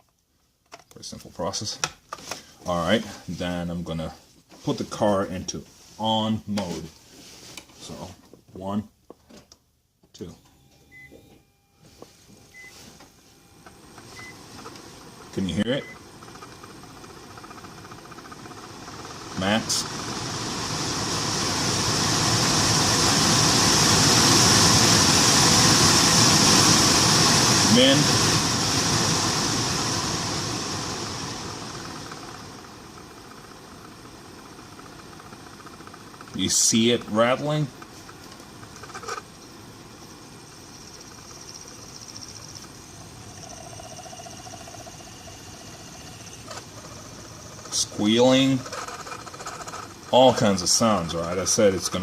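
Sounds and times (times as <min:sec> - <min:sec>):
blower fan rushing air: 0:12.5 - 0:52.0
pulsing high-pitched squeal: 0:40.3 - 0:51.2.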